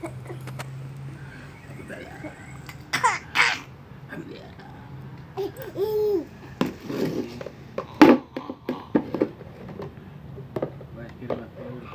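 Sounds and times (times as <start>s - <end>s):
baby vocalizing: 0.0s - 3.8s, 4.4s - 9.2s.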